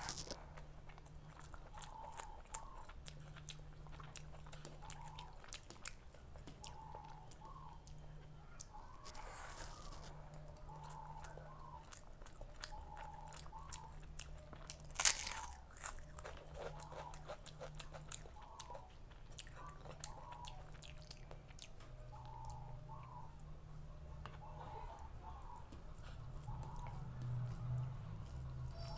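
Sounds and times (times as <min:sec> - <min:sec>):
crunchy bite: 0:00.0 - 0:06.0, 0:10.8 - 0:21.7
wet chewing: 0:00.0 - 0:23.6, 0:24.2 - 0:28.9.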